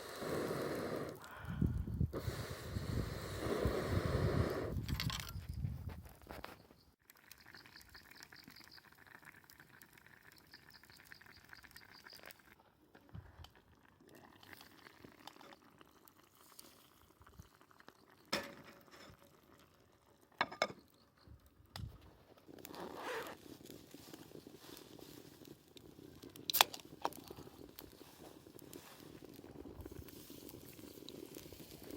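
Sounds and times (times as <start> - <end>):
soup bubbling: 0.0 - 4.8, 7.0 - 12.6, 13.2 - 18.3, 23.4 - 31.9.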